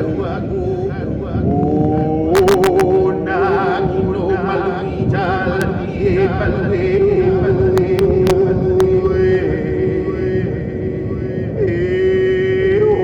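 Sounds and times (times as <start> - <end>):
music with singer: 0.0 - 13.0
sharp clicks: 2.4 - 2.9, 7.8 - 8.4.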